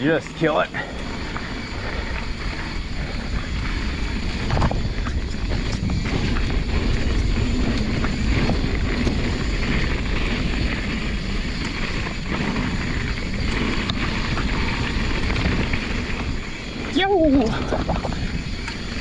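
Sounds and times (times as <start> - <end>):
bike tyre noise: 0.0 - 19.0
wind buffeting microphone: 0.0 - 19.0
small clicks and rattles: 17.2 - 19.0.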